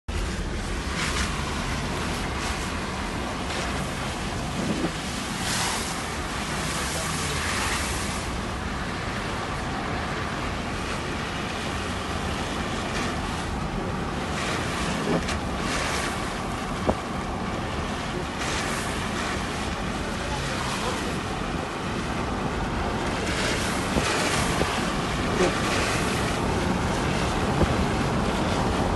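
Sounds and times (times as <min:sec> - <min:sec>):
floodwater rushing: 0:00.1 - 0:28.9
wind buffeting microphone: 0:00.4 - 0:06.4, 0:21.2 - 0:28.9.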